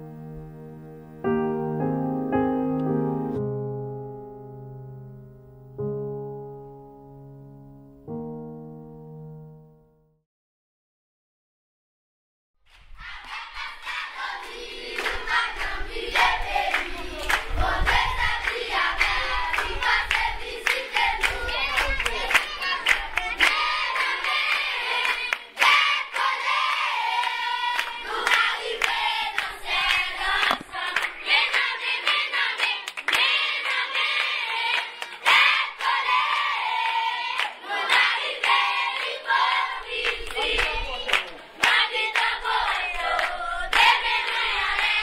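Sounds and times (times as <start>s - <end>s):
group of people singing: 13.0s - 45.0s
rhythmic hand clapping: 13.0s - 45.0s.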